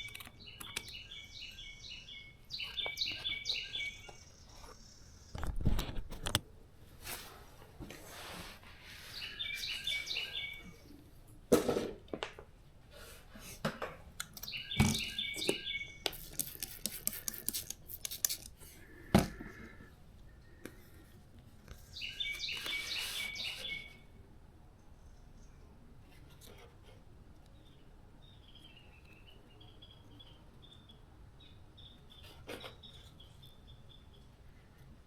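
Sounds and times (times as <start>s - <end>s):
songbird singing: 0.0s - 5.6s, 9.0s - 11.1s, 14.3s - 17.6s, 21.8s - 24.1s, 27.5s - 34.4s.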